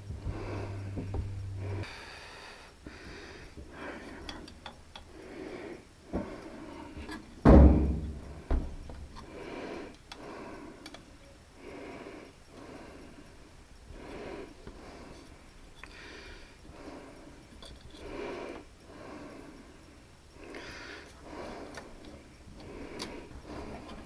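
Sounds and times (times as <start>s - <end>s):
close breathing: 0.0s - 4.2s, 11.6s - 17.4s, 18.0s - 24.0s
loud thunk: 7.5s - 8.7s
knocks on metal parts: 7.5s - 8.8s.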